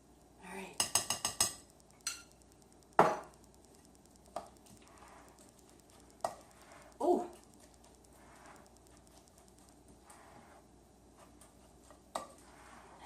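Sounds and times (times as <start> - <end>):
utensil clinking against bowl: 0.8 - 2.4.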